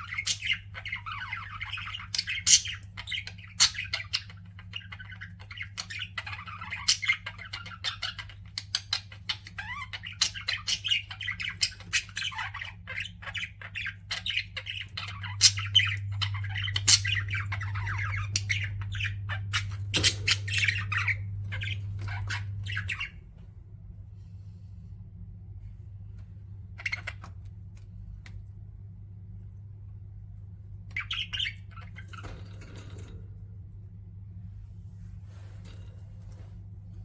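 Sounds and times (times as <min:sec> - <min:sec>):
budgerigars chattering: 0:00.0 - 0:23.2, 0:26.8 - 0:27.4, 0:30.9 - 0:32.4
low steady hum: 0:00.0 - 0:37.0.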